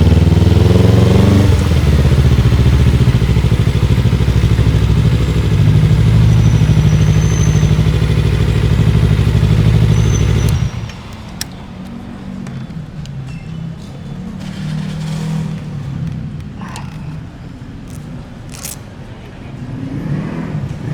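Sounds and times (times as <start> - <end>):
motorcycle engine idling: 0.0 - 13.2.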